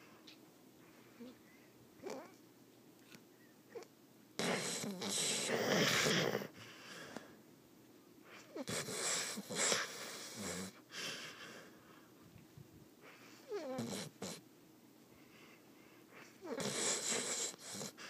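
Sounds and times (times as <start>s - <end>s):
dog snoring: 2.0s - 2.4s, 3.7s - 6.7s, 8.5s - 11.8s, 13.4s - 14.4s, 16.3s - 18.0s
faint breathing: 4.5s - 7.4s, 8.2s - 12.3s, 15.0s - 18.0s.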